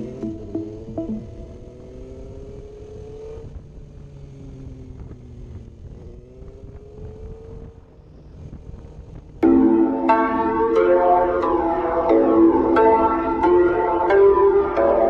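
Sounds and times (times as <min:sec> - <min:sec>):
motorcycle engine revving: 0:00.0 - 0:09.4.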